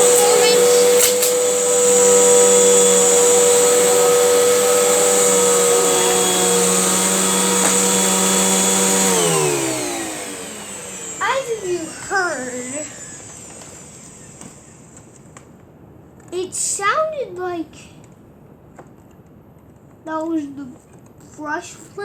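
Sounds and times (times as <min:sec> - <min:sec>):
vacuum cleaner motor whining: 0:00.0 - 0:15.7.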